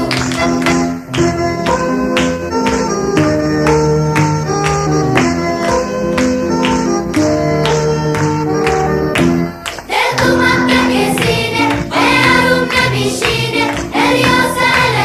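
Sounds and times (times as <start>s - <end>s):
instrumental notes: 0.0s - 15.0s
choir singing: 9.9s - 15.0s.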